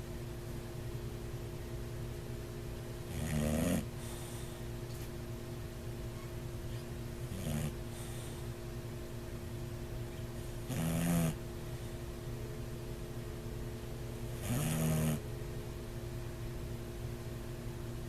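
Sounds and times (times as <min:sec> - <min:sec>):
dog snoring: 0:03.1 - 0:04.6, 0:06.7 - 0:08.5, 0:10.2 - 0:12.0, 0:14.3 - 0:15.3.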